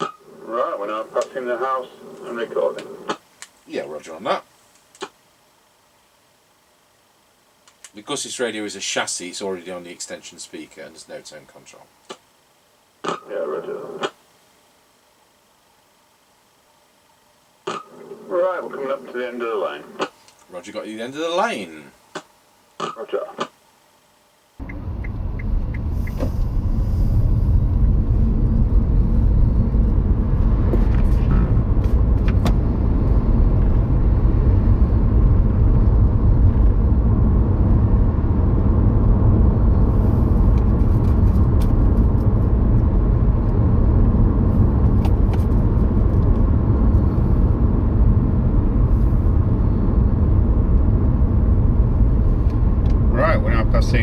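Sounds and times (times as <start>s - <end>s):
car engine and tyre rumble: 24.6s - 54.0s.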